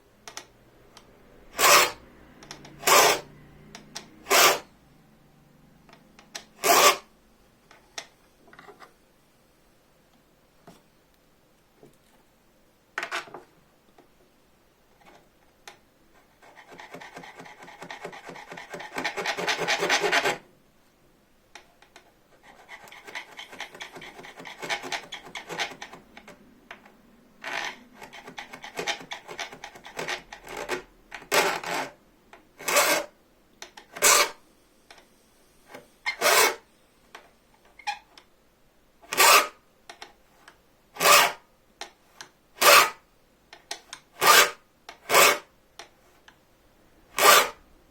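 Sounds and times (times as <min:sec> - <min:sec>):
file rasping on saw blade: 0:01.6 - 0:02.0, 0:02.7 - 0:03.3, 0:04.2 - 0:04.7, 0:06.6 - 0:07.1, 0:16.4 - 0:20.4, 0:22.5 - 0:25.9, 0:32.6 - 0:33.1, 0:34.0 - 0:34.4, 0:36.1 - 0:36.7, 0:39.1 - 0:39.6, 0:41.0 - 0:41.4, 0:42.6 - 0:43.0, 0:44.2 - 0:45.5, 0:47.2 - 0:47.6.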